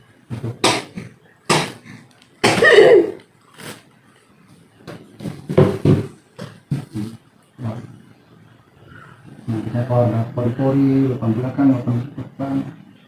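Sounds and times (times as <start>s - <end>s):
person coughing: 2.4s - 3.2s.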